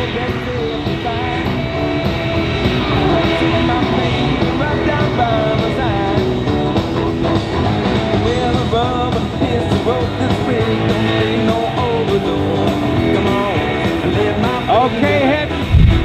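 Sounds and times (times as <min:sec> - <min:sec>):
rock guitar: 0:00.0 - 0:16.0
person singing: 0:02.8 - 0:06.4, 0:08.2 - 0:16.0.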